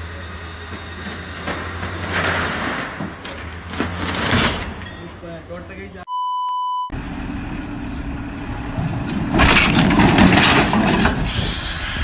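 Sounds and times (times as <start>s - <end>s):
heavy engine rumbling: 0.0s - 6.0s, 6.9s - 12.0s
loud crashing clatter: 9.2s - 11.7s
steady hiss: 11.1s - 12.0s.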